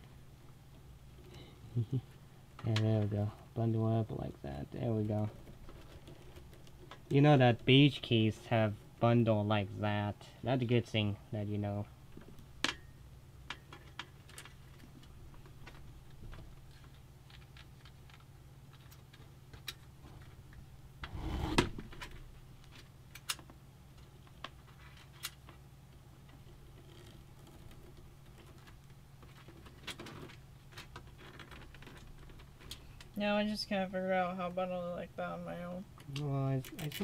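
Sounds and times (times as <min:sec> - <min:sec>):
steady low hum: 0:00.0 - 0:37.0
cables and plastic parts clicking: 0:22.0 - 0:33.2.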